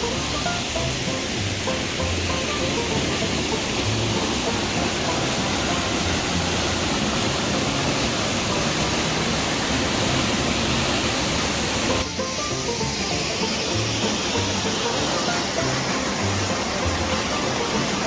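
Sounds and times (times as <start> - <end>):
background music: 0.0 - 18.0
waterfall rushing: 0.0 - 18.0.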